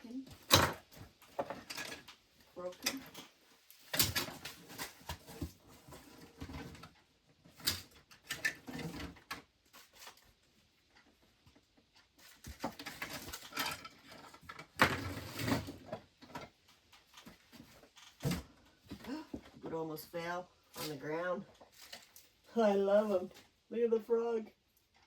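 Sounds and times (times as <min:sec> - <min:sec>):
small items knocking and clattering: 0:00.1 - 0:10.3, 0:12.2 - 0:19.7.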